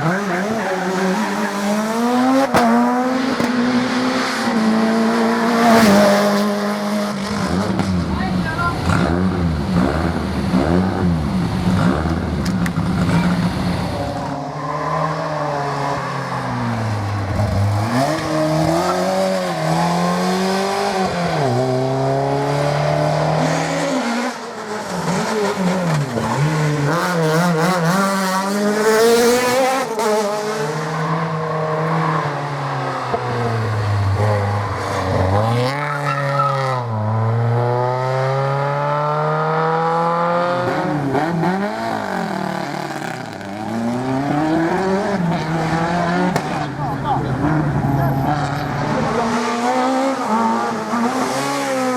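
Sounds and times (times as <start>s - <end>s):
rally car engines revving: 0.0s - 51.9s.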